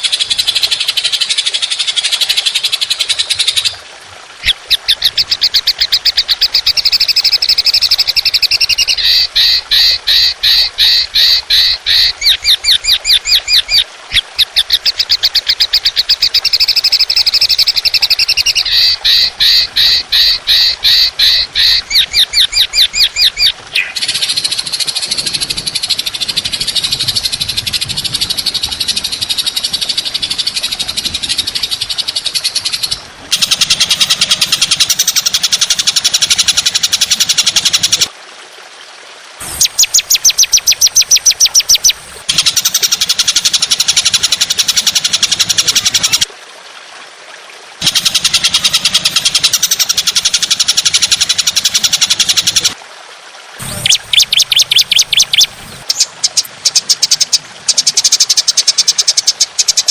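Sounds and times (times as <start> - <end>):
songbird harsh rapid notes: 32.5 - 38.1, 39.4 - 46.3, 47.8 - 52.8, 53.6 - 58.4
bird buzzing trill: 32.6 - 38.1, 47.8 - 52.7.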